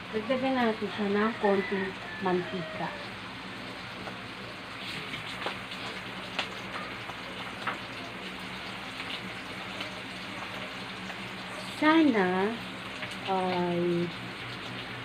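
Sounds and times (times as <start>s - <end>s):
fish sizzling in hot oil: 0.0s - 15.0s
oil popping and crackling: 3.7s - 15.0s.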